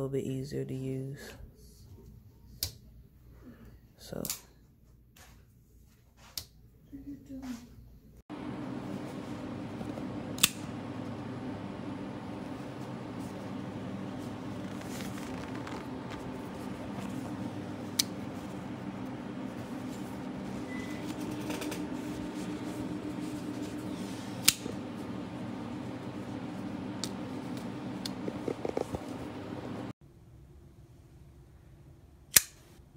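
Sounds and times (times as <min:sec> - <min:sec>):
low hum: 0:08.3 - 0:30.0.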